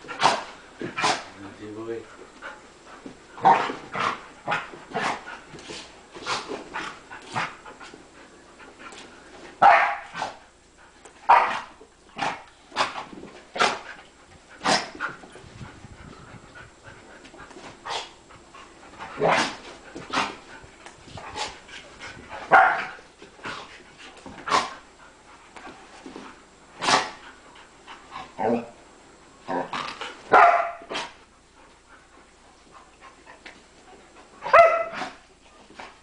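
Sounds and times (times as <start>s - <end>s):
dogs play sneezing: 0.0s - 1.4s, 3.4s - 7.7s, 9.6s - 10.5s, 11.2s - 15.3s, 17.6s - 18.2s, 19.0s - 20.6s, 21.2s - 24.9s, 26.0s - 27.4s, 29.5s - 31.2s, 34.4s - 36.0s
dogs barking: 9.6s - 10.2s, 11.3s - 11.6s, 22.5s - 23.0s, 30.3s - 30.9s, 34.5s - 35.1s.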